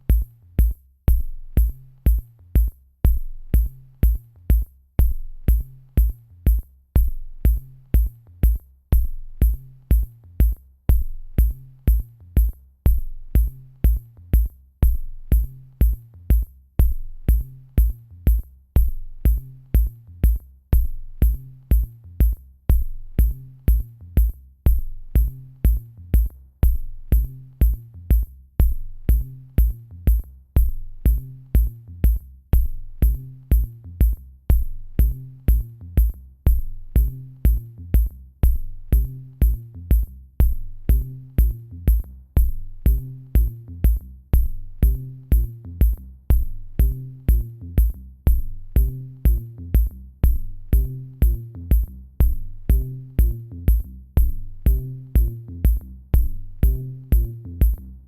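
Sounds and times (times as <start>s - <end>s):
electronic music with drum-machine beat: 0.0s - 58.0s.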